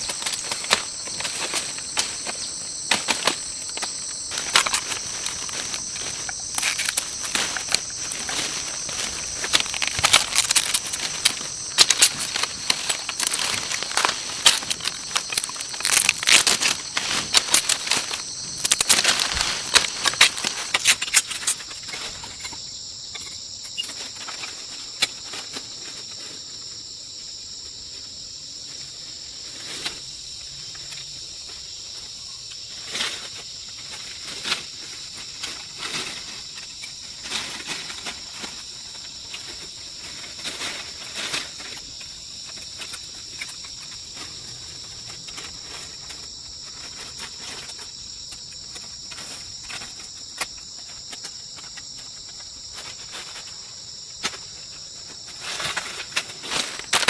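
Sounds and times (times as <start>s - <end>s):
crackling clicks and rustling: 0.0s - 22.6s, 55.2s - 57.0s
insects droning: 0.0s - 57.0s.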